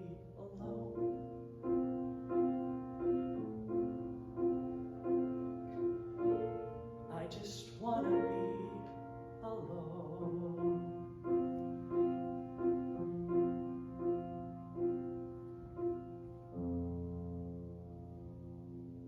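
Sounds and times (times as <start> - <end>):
piano playing: 0.0 - 19.0.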